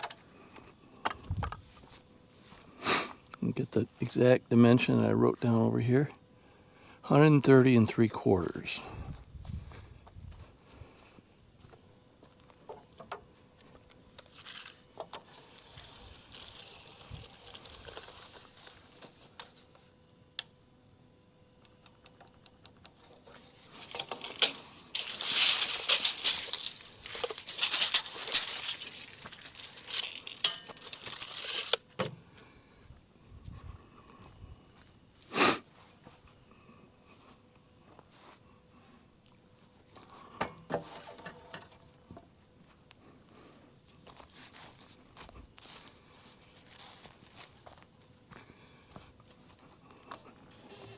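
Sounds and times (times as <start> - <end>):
insects trilling: 0.0 - 50.9
rustling and scraping with clicks: 12.7 - 20.0, 21.7 - 32.1
handling noises: 21.7 - 32.2.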